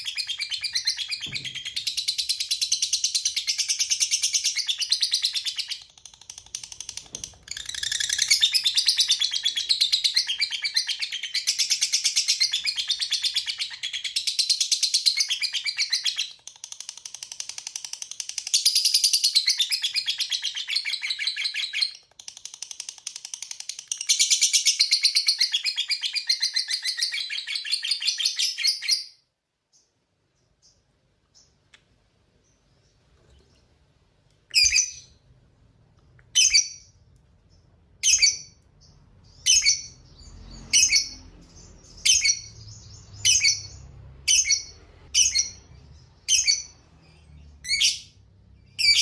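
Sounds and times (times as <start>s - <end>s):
lovebird chattering trill: 38.0s - 46.8s.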